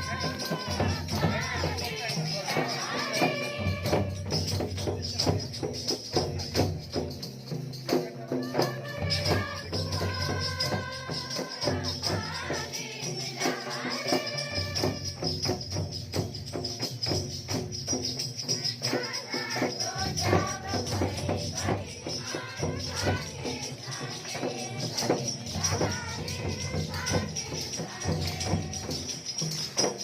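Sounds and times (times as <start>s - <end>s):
group singing a hymn: 0.0s - 4.6s, 8.4s - 15.4s, 18.6s - 30.0s
tambourines shaking: 0.0s - 30.0s.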